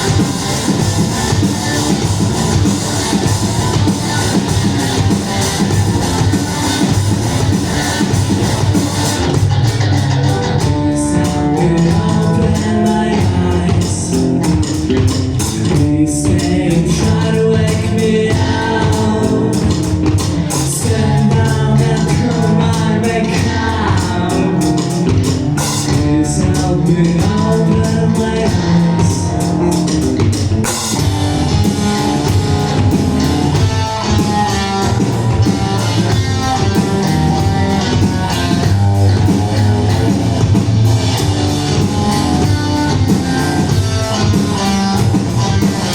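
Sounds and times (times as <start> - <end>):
drum kit: 0.0 - 45.9
guitars: 0.0 - 45.9
person singing: 10.3 - 14.5, 15.6 - 25.2.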